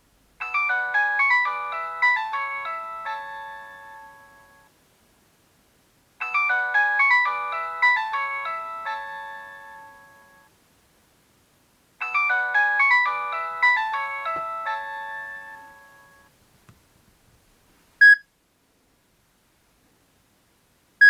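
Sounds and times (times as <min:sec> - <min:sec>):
phone ringtone melody: 0:00.4 - 0:04.7, 0:06.2 - 0:10.5, 0:12.0 - 0:16.3.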